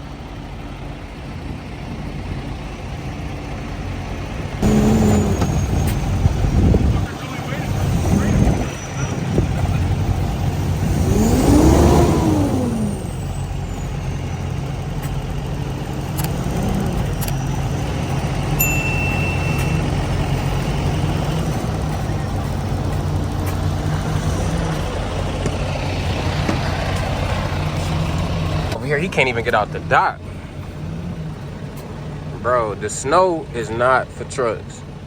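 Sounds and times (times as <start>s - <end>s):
diesel truck engine revving: 0.0s - 35.0s
brief high beep: 18.6s - 20.4s.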